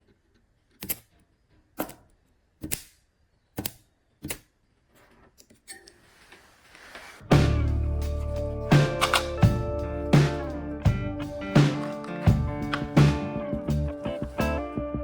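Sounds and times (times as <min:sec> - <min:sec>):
sharp clicks: 0:08.7 - 0:09.5.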